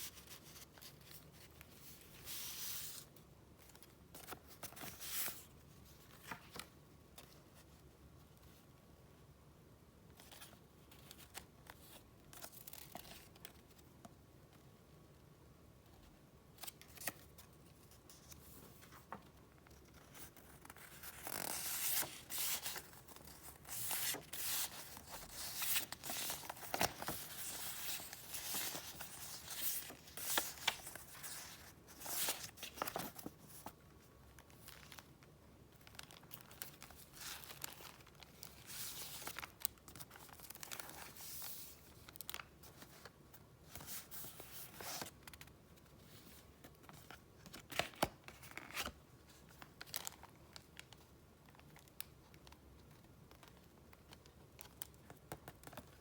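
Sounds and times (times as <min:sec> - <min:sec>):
paper and packaging rustling: 0:18.1 - 0:33.8.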